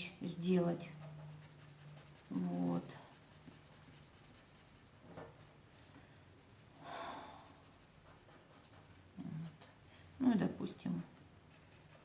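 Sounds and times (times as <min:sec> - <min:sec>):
drawing tool strokes on paper: 0:00.8 - 0:05.0, 0:07.4 - 0:09.6, 0:11.5 - 0:12.0.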